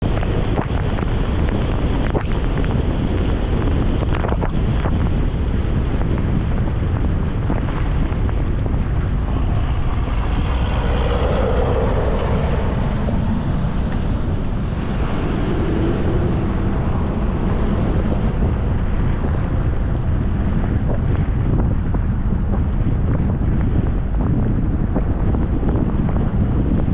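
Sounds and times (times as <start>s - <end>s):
highway traffic: 0.0s - 26.9s
wind buffeting the microphone: 0.0s - 26.9s
vehicle passing: 7.6s - 20.9s.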